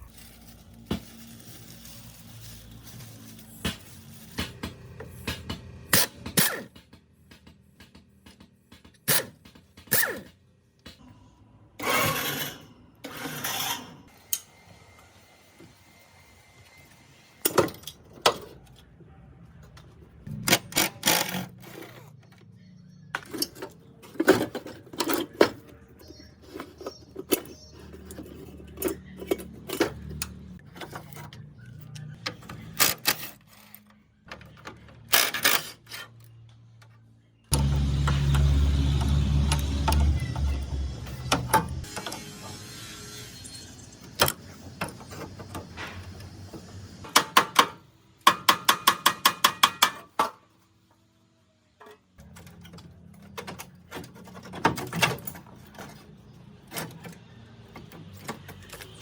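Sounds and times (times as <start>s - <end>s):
sharp clicks and knocks: 3.6s - 11.0s.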